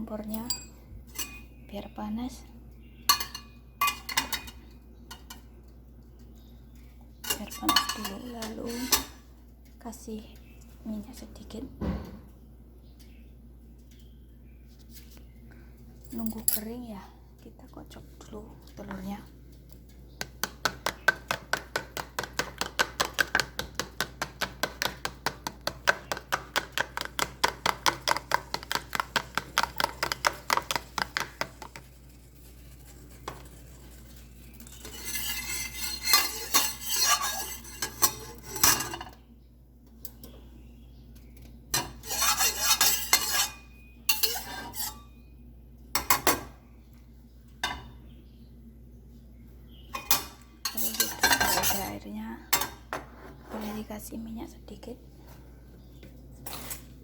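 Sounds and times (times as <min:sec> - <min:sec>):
fork beating eggs in a bowl: 0:07.3 - 0:09.2, 0:19.8 - 0:39.0, 0:41.8 - 0:45.0, 0:50.0 - 0:52.0.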